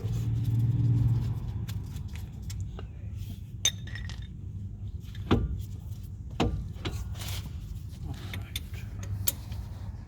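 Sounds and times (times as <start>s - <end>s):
metal tool clinking and knocking: 3.6s - 5.6s.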